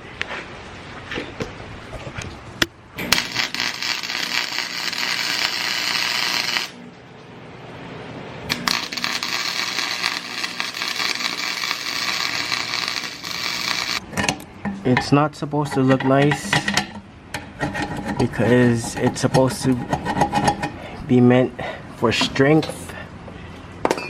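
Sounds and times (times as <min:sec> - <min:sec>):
welding arc crackling: 0:03.0 - 0:06.9, 0:08.5 - 0:14.0.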